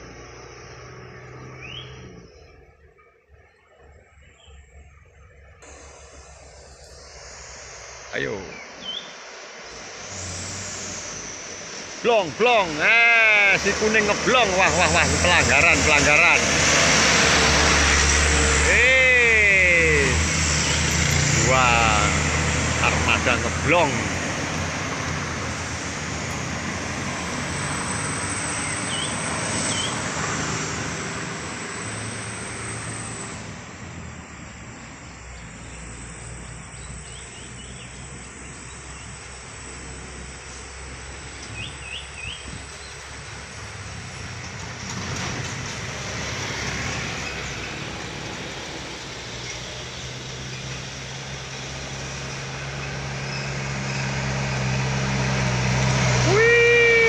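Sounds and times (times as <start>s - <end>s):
heavy road traffic passing: 0.0s - 4.0s, 4.8s - 57.0s.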